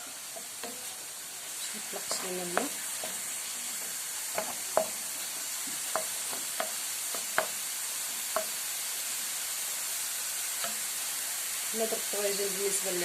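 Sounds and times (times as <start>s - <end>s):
food sizzling in oil: 0.0s - 13.0s
utensil knocking against pan: 2.1s - 3.2s, 4.3s - 5.1s, 5.7s - 7.6s, 8.3s - 8.6s.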